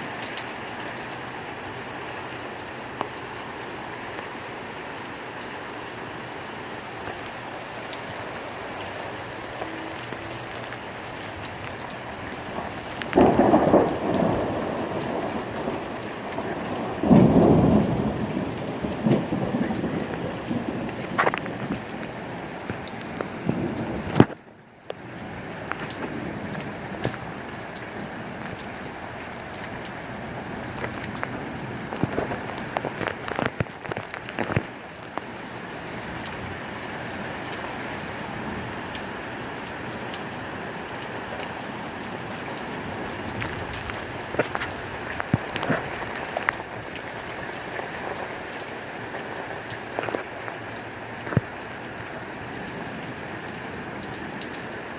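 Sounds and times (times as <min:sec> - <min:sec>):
heavy rain: 0:00.0 - 0:54.9
thunder rolling: 0:12.3 - 0:24.4.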